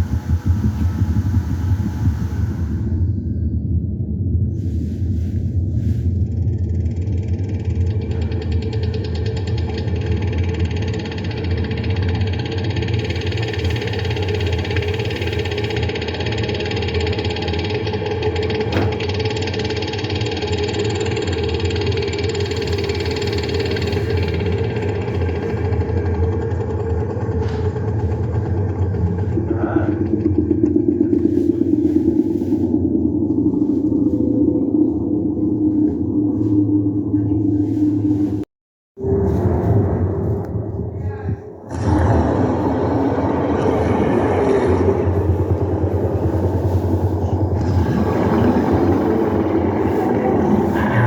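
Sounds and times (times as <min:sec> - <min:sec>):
engine running: 0:05.8 - 0:38.4, 0:41.6 - 0:51.0.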